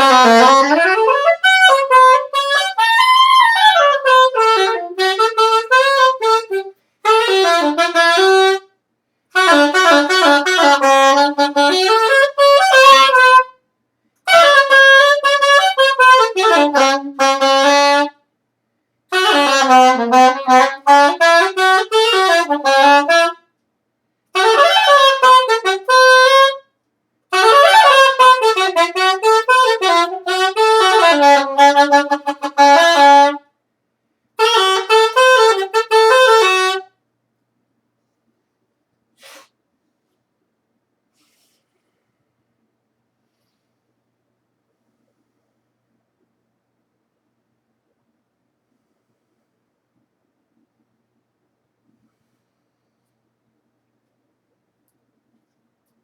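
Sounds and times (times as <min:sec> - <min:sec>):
saxophone improvising: 0:00.0 - 0:08.7, 0:09.3 - 0:13.6, 0:14.3 - 0:18.2, 0:19.1 - 0:23.4, 0:24.4 - 0:26.6, 0:27.3 - 0:33.4, 0:34.4 - 0:36.9.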